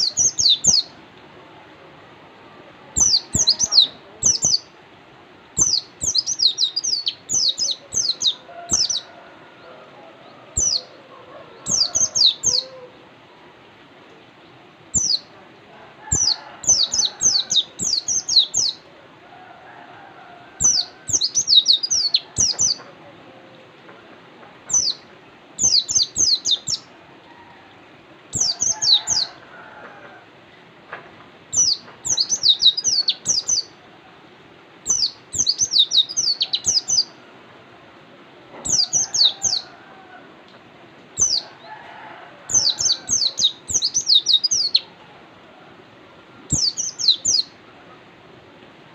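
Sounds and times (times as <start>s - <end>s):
bird chirping: 0.0s - 1.0s, 3.0s - 4.7s, 5.6s - 9.1s, 14.9s - 15.3s, 16.1s - 18.8s, 20.6s - 22.9s, 25.6s - 26.9s, 28.3s - 29.3s, 31.6s - 33.8s, 34.8s - 37.2s, 38.7s - 39.7s, 41.2s - 41.5s, 42.5s - 44.9s, 46.5s - 47.6s.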